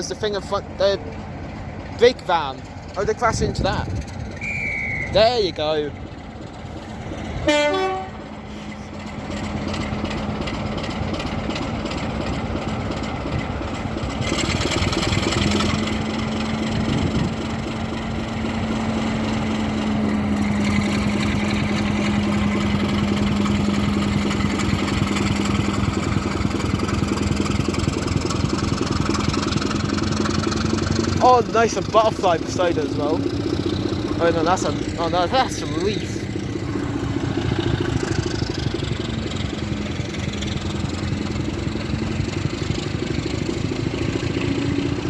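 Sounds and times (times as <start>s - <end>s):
train running rumble: 0.0s - 45.0s
short train horn toot: 7.4s - 8.2s.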